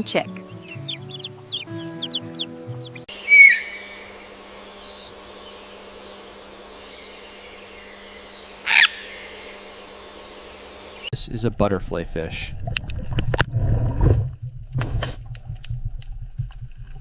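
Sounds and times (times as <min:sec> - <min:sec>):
light background music: 0:00.0 - 0:03.1
chick peeping: 0:00.0 - 0:05.6
low hum: 0:00.4 - 0:17.0.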